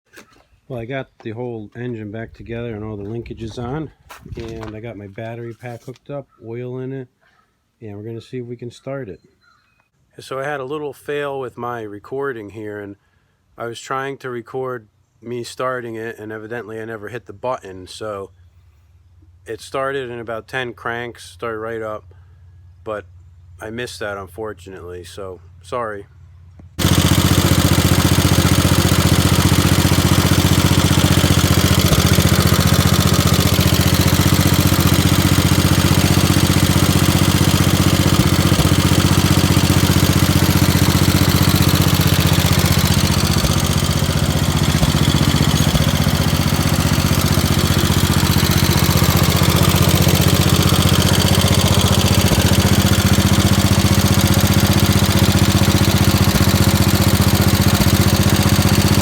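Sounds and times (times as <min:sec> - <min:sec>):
single-cylinder engine running: 0:26.7 - 0:59.0.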